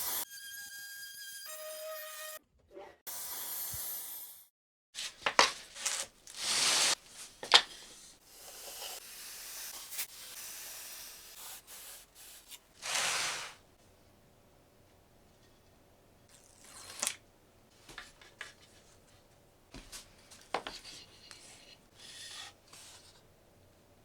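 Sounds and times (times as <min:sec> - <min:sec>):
hissing rubbing noise: 0:12.8 - 0:13.6.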